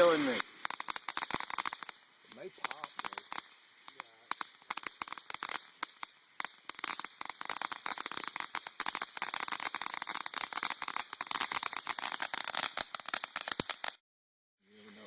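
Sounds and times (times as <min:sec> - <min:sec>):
firework crackling: 0:00.0 - 0:14.0
firework spraying hiss: 0:00.0 - 0:14.0.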